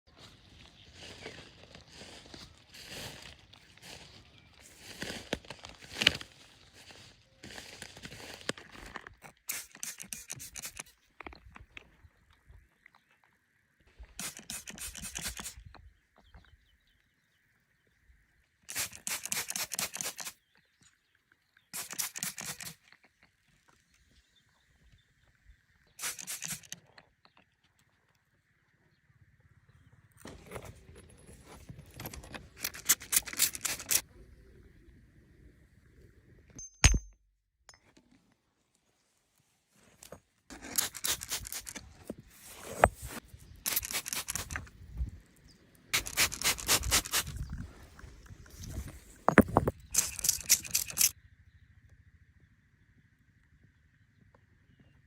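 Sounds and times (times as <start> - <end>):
scraping in dirt and stones: 0.1 - 13.2, 13.9 - 16.5, 18.7 - 20.9, 21.7 - 24.3, 26.0 - 28.0, 30.2 - 34.1, 39.7 - 45.2, 45.8 - 51.2
stone-on-stone clink: 36.6 - 37.8.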